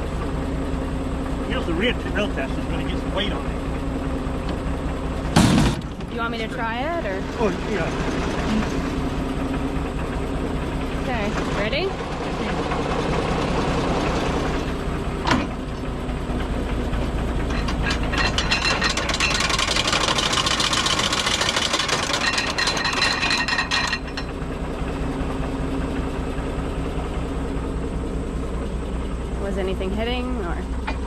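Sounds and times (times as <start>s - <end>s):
tractor engine running: 0.0s - 31.0s
mower cutterbar whirring clatter: 10.8s - 24.5s.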